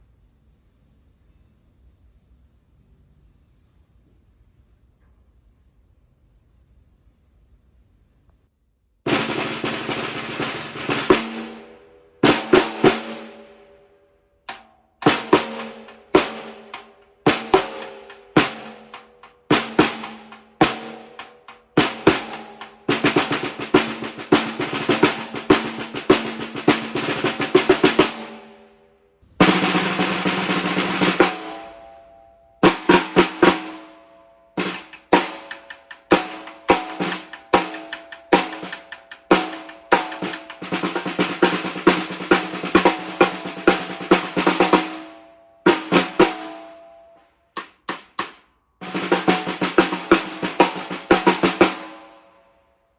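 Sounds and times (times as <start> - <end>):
snare drum rolls and strokes: 9.1 - 13.7, 14.5 - 28.7, 29.3 - 31.8, 32.6 - 46.8, 47.6 - 52.2.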